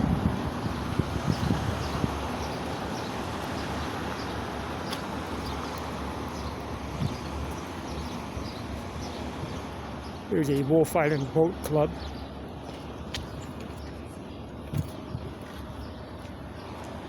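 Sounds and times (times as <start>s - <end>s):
wind buffeting microphone: 0.0s - 17.0s
faint footsteps: 14.6s - 17.0s.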